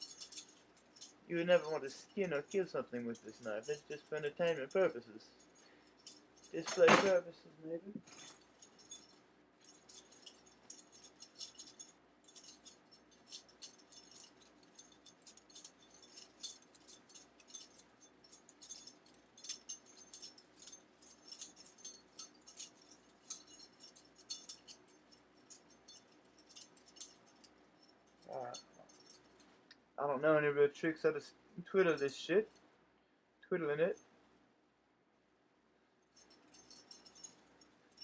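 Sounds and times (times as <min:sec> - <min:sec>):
butterfly knife clicking and jingling: 0:05.5 - 0:07.2, 0:09.7 - 0:29.4.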